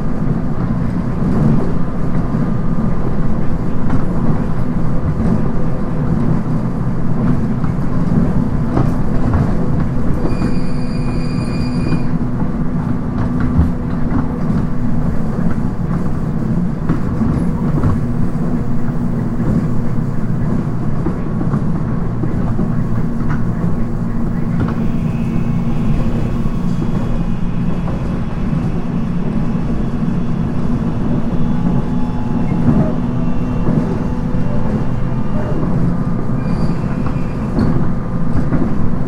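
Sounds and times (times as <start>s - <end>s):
faint train whine: 0.0s - 39.0s
train wheels rumbling: 0.3s - 37.8s
high tone: 13.2s - 29.0s.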